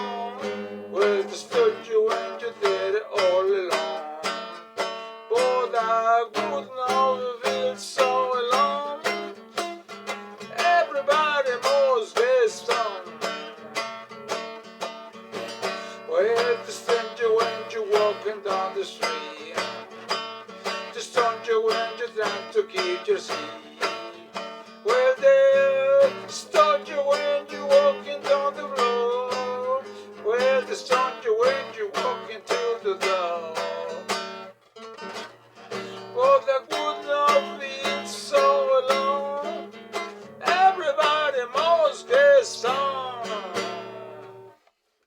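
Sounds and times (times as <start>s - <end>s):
acoustic guitar music: 0.0s - 44.7s.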